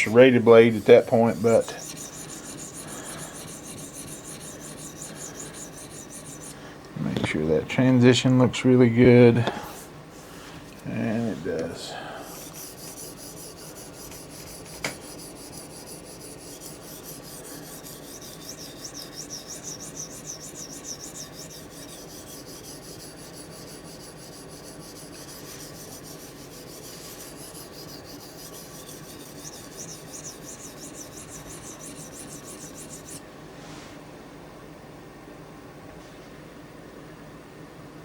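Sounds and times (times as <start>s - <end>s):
blade scraping on sharpening stone: 0.6s - 6.6s, 12.2s - 33.2s.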